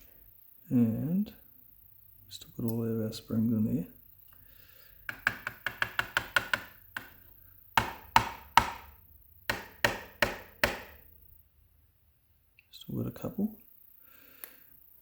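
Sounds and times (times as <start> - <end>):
lock knocked on hard surface: 5.1 - 7.2, 7.8 - 11.0.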